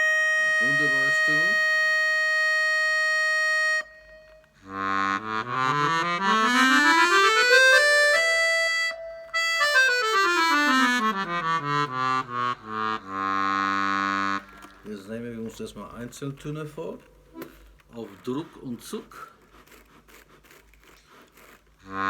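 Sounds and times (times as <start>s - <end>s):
accordion playing a scale: 0.0s - 15.0s.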